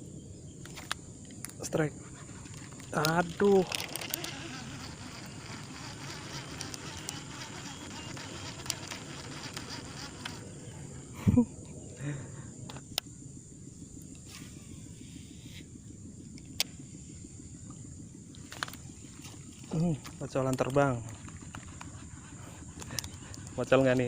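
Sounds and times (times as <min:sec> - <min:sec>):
high-pitched insect drone: 0:00.0 - 0:24.0
sharp clicks: 0:02.4 - 0:10.4.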